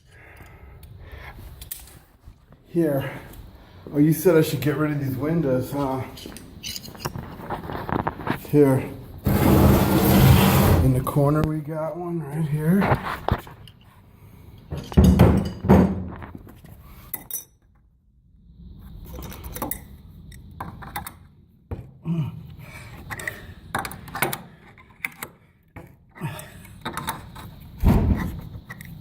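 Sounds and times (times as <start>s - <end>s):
metal wrench clinking on bolt: 6.2s - 7.1s.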